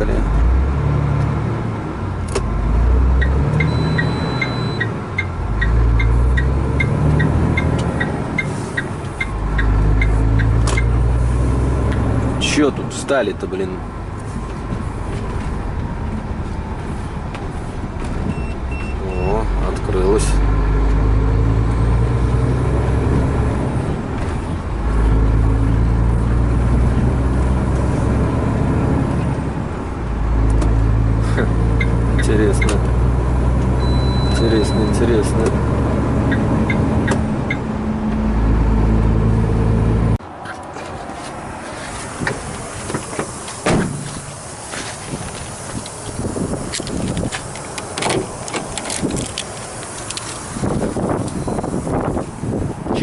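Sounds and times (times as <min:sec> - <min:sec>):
truck diesel engine revving: 0:00.0 - 0:14.0, 0:17.8 - 0:40.2
turn signal ticking: 0:03.2 - 0:11.1, 0:31.4 - 0:33.0, 0:36.2 - 0:37.7.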